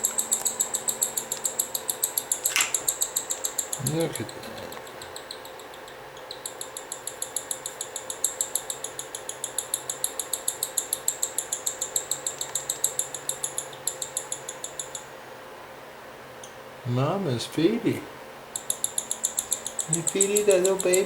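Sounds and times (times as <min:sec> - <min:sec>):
nestling bird squeaky begging chirps: 0:18.6 - 0:21.0.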